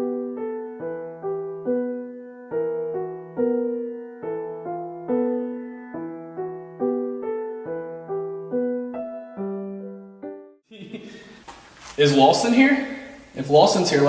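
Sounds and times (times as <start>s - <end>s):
slow piano melody: 0.0s - 10.7s.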